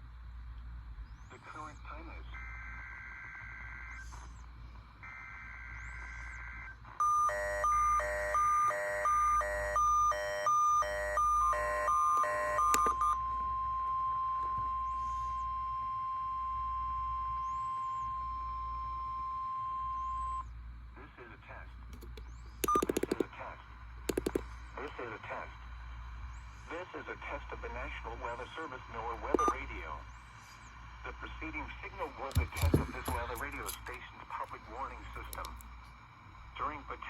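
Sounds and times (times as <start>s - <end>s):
steady high warning tone: 2.2s - 20.9s, 22.0s - 23.2s, 25.6s - 34.0s
alarm beeping: 7.0s - 20.5s, 22.6s - 23.2s, 24.1s - 24.4s, 29.4s - 29.8s
warbling digital header tones: 22.6s - 23.2s.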